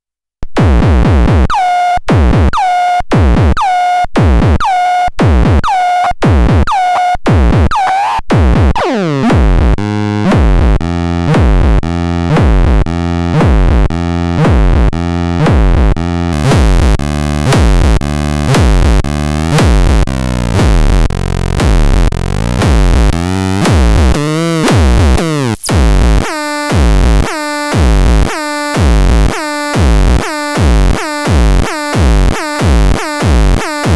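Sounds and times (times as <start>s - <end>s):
kick drum: 0.4s - 33.9s
pulsing synth bass: 8.6s - 33.9s
synth stab: 16.4s - 29.0s.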